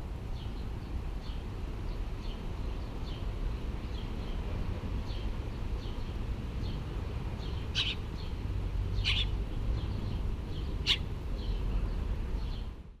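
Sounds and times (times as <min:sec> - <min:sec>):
baby bird cheeping: 0:07.6 - 0:08.1, 0:09.0 - 0:09.4, 0:10.8 - 0:11.1.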